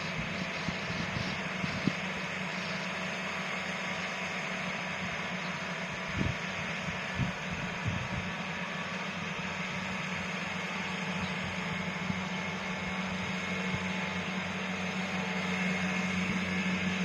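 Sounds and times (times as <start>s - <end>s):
harvester engine humming: 0.0s - 17.0s.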